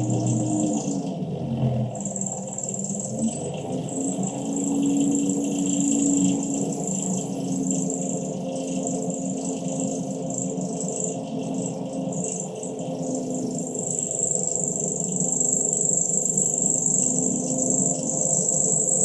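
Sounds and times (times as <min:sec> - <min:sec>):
drill motor buzzing: 0:00.0 - 0:01.0.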